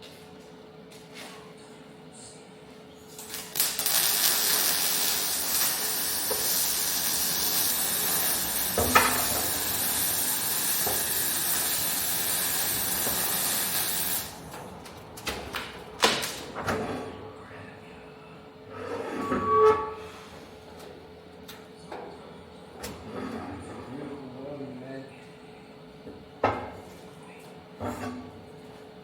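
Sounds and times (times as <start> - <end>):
welding arc crackling: 3.1 - 14.6.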